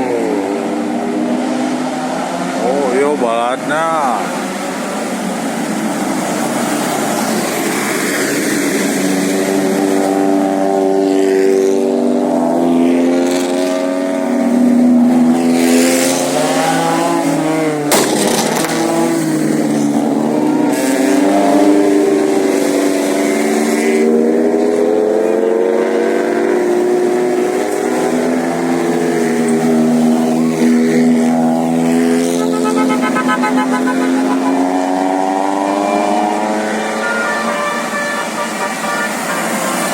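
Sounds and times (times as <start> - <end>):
bus engine accelerating: 16.2 - 39.9.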